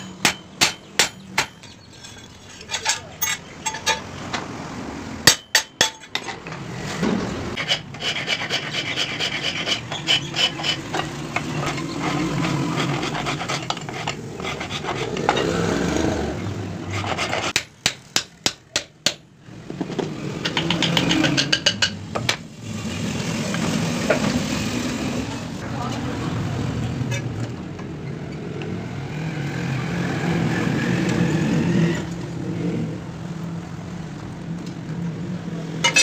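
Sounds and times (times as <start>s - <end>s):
rapid rasping on steel: 7.6s - 15.5s, 16.9s - 17.7s.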